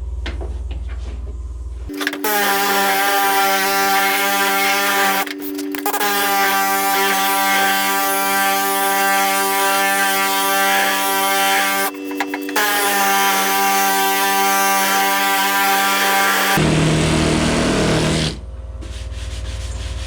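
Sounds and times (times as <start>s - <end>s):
power sander whining: 1.9s - 18.3s.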